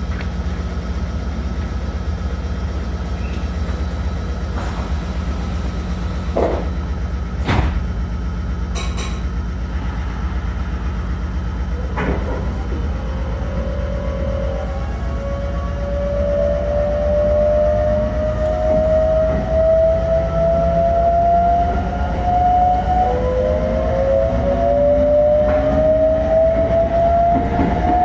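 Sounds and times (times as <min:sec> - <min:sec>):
train equipment humming: 0:00.0 - 0:28.0
train doors thudding: 0:03.1 - 0:08.1, 0:08.7 - 0:15.8, 0:16.8 - 0:28.0
train inverter tone: 0:08.1 - 0:28.0.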